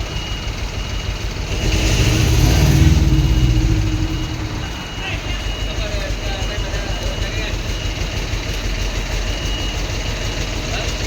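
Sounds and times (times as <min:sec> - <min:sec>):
reversing beeps: 0:00.0 - 0:11.0
diesel engine revving: 0:00.9 - 0:09.0.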